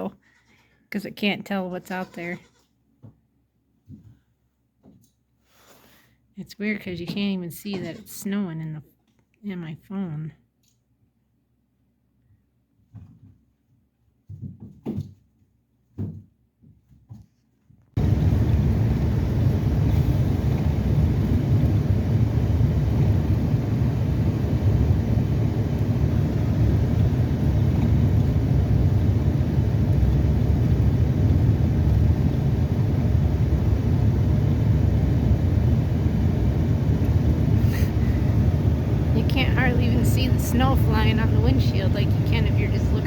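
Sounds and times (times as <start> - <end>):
car road and engine noise: 18.0 - 43.0.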